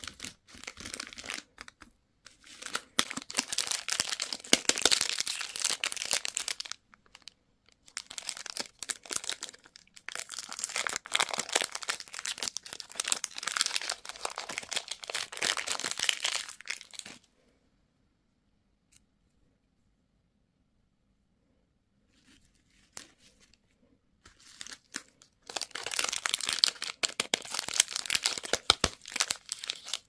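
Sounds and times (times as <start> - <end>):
candy wrapper crinkling: 0.0 - 17.2, 24.3 - 30.0.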